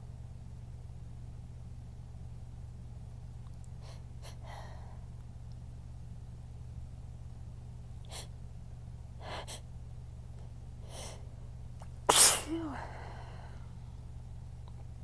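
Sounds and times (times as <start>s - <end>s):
person sneezing loudly: 12.1s - 13.2s
gasping inhales: 12.1s - 13.6s.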